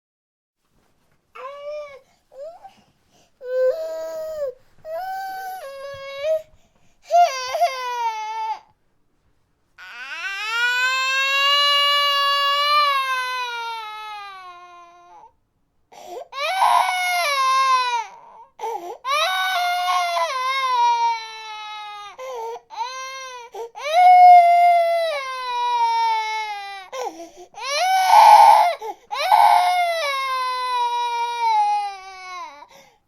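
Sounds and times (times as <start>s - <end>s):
infant crying: 3.4s - 6.5s, 7.1s - 8.7s, 9.8s - 15.3s, 16.0s - 32.8s
infant gasping breaths: 18.6s - 19.1s, 26.9s - 27.6s.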